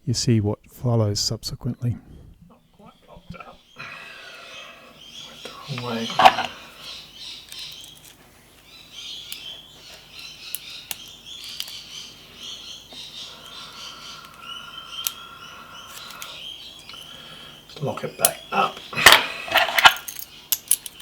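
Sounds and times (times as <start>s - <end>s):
birds chirping: 1.3s - 21.0s
steady held bird call: 2.5s - 8.0s, 8.8s - 19.8s
metal tools clicking on padlock: 7.4s - 8.2s, 10.5s - 11.8s, 19.1s - 21.0s.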